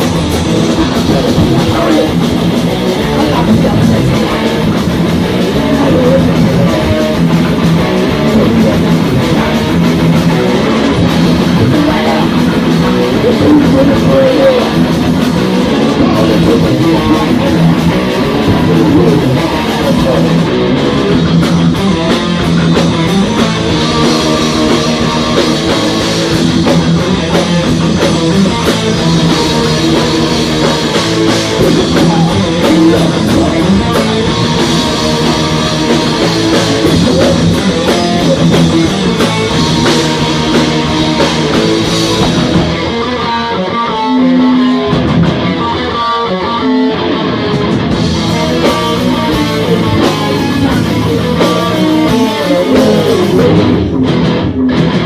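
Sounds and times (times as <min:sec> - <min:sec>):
drum kit and cymbals: 0:00.0 - 0:43.1, 0:47.5 - 0:55.0
bass guitar: 0:00.0 - 0:55.0
distorted electric guitars: 0:00.0 - 0:55.0.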